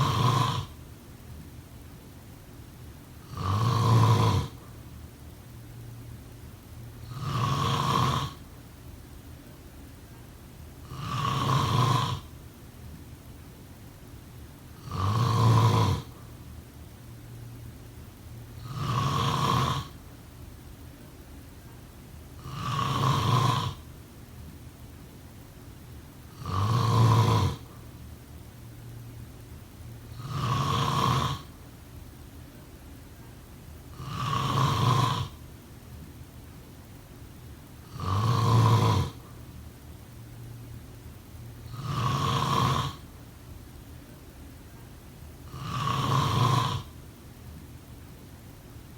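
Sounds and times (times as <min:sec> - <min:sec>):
person snoring: 0:00.0 - 0:00.8, 0:03.2 - 0:04.6, 0:07.0 - 0:08.4, 0:10.8 - 0:12.3, 0:14.8 - 0:16.2, 0:18.6 - 0:20.0, 0:22.4 - 0:23.8, 0:26.3 - 0:27.8, 0:30.1 - 0:31.5, 0:33.9 - 0:35.4, 0:37.8 - 0:39.4, 0:41.7 - 0:43.1, 0:45.5 - 0:47.0.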